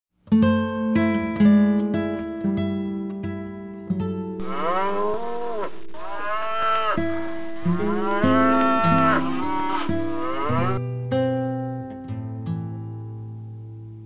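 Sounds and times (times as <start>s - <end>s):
acoustic guitar music: 0.2s - 14.0s
cow mooing: 4.4s - 10.8s.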